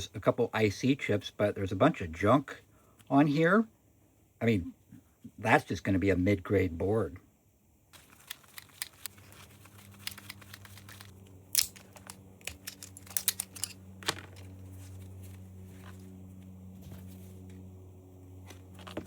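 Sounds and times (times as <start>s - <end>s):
steady low hum: 0.0s - 19.0s
clicks and rattles of device parts: 8.0s - 14.6s.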